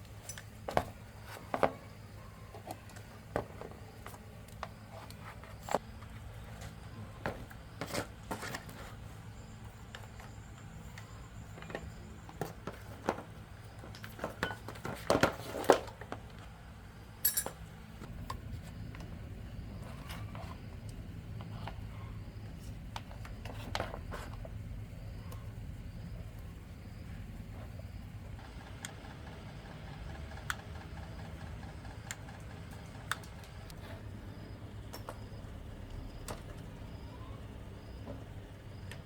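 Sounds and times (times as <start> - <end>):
metal tools clinking: 0.2 - 0.6, 17.2 - 17.6.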